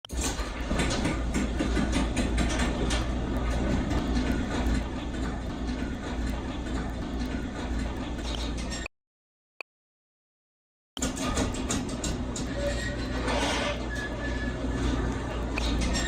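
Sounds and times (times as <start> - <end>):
door clicks and rattles: 0.1 - 8.7, 11.0 - 12.6
garage door opener rumbling: 0.1 - 8.9, 11.0 - 16.0.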